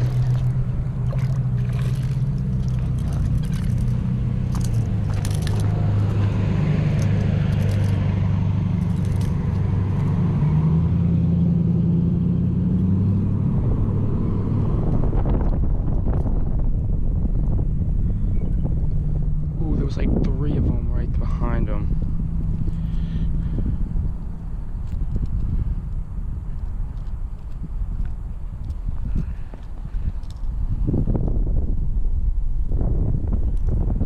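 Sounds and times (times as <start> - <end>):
engine humming: 0.0 - 31.3
clicks and scraping: 1.6 - 8.0, 8.8 - 10.1.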